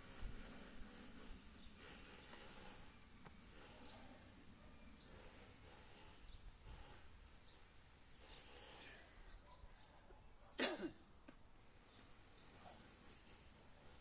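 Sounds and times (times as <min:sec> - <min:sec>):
faint background noise: 0:00.0 - 0:14.0
sharp sneeze: 0:10.6 - 0:11.0.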